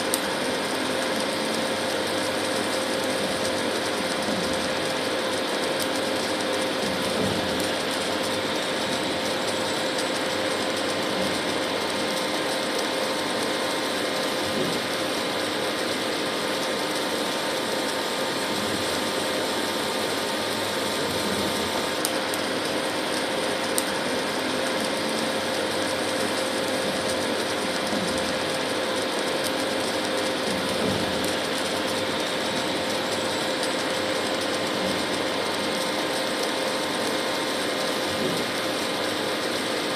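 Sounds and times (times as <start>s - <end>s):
induction cooktop humming: 0.0s - 39.9s
small clicks: 20.8s - 39.6s.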